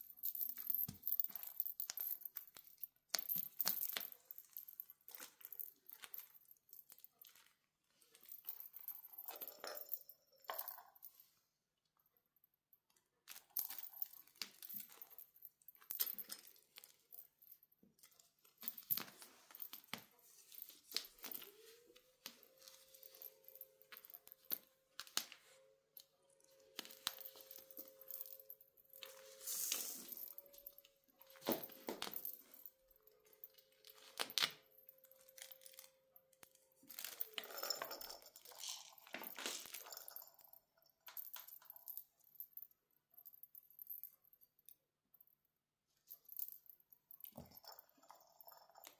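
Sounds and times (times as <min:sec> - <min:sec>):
cat toys rattling and clattering: 0:00.0 - 0:11.2, 0:26.3 - 0:42.1, 0:47.2 - 0:48.9.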